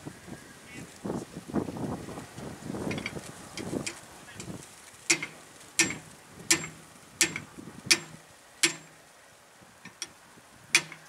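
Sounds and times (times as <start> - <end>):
sharp ticking clicks: 5.1 - 9.0, 10.8 - 11.0.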